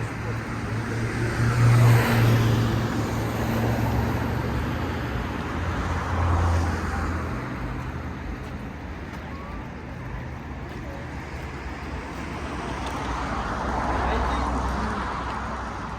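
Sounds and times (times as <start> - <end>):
cars passing: 0.0 - 15.9.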